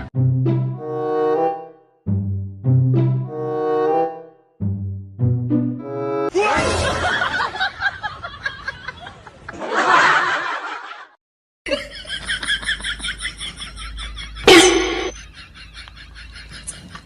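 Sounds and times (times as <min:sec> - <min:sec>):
people laughing: 0:06.4 - 0:17.0.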